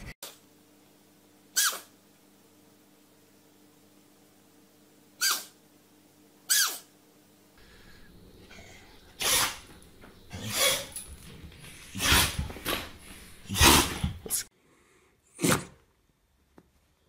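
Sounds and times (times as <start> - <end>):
pet sneezing: 5.2 - 5.6, 6.5 - 6.9, 9.2 - 9.7, 10.3 - 11.1, 11.9 - 14.5, 15.4 - 15.8
pet snorting: 10.3 - 14.5.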